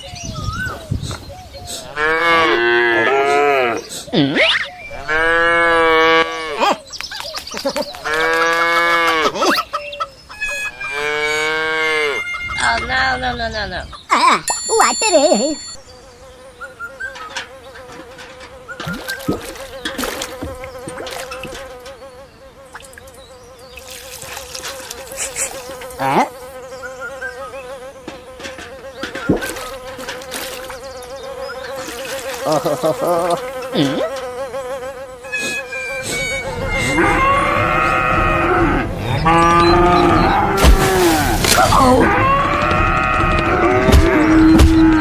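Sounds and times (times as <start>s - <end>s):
loud bending calls: 10.2s - 16.2s, 35.2s - 45.0s.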